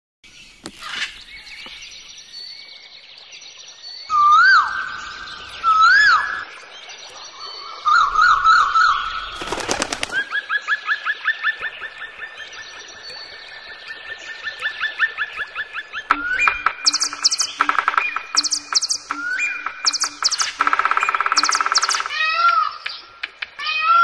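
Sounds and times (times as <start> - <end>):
faint birdsong: 0.2 - 24.0
whistled bird notes: 3.8 - 11.0, 16.0 - 23.1
bird warbling trill: 16.0 - 23.1
cluster of clicks: 16.1 - 23.6.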